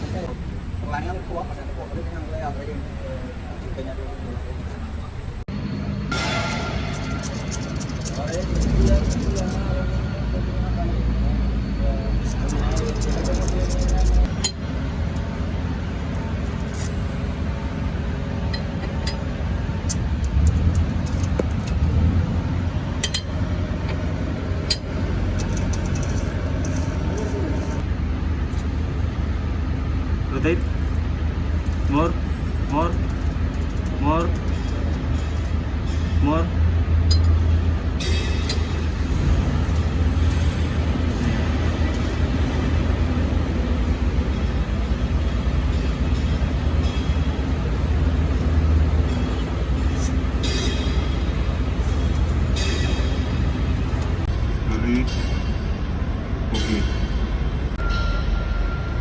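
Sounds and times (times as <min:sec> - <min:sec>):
steady low rumble: 0:00.0 - 0:59.0
metal tools clinking on engine parts: 0:06.1 - 0:09.6, 0:11.7 - 0:14.7, 0:18.5 - 0:22.0, 0:22.9 - 0:27.8, 0:31.6 - 0:36.3, 0:37.0 - 0:59.0.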